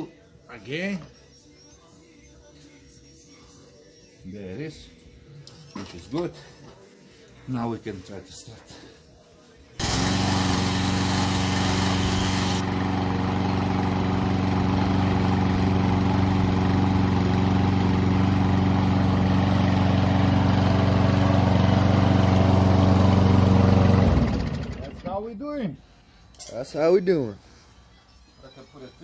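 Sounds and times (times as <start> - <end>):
lawn mower engine running: 9.8 - 25.2.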